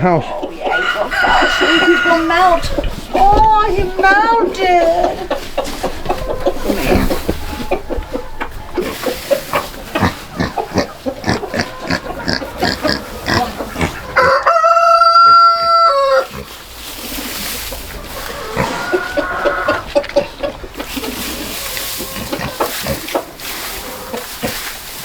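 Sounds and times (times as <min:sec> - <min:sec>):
rapid clucking: 0:00.0 - 0:25.0
rooster crowing: 0:00.4 - 0:03.1, 0:05.1 - 0:09.9, 0:10.8 - 0:16.3, 0:18.2 - 0:19.9.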